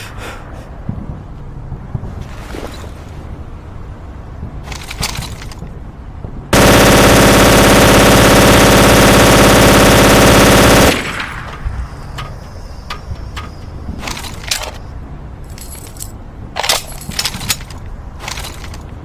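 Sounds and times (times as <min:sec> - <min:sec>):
machine gun burst: 0:06.6 - 0:11.5.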